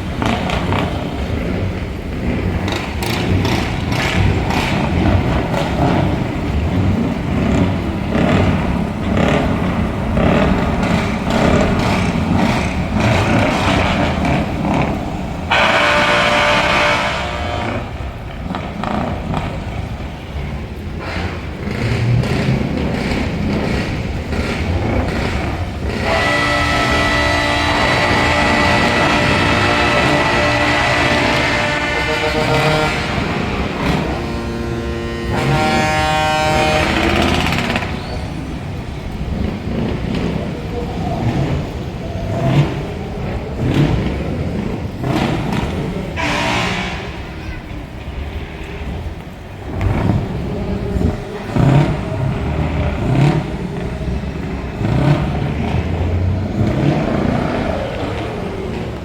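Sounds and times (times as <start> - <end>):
truck engines running: 0.0 - 59.0
air horn tones: 11.3 - 19.0, 25.8 - 38.4, 46.2 - 47.8.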